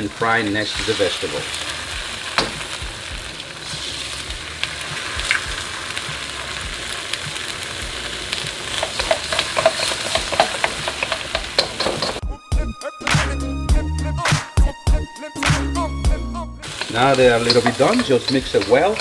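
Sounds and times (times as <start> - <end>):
food sizzling in a wok: 0.0 - 12.2, 16.6 - 19.0.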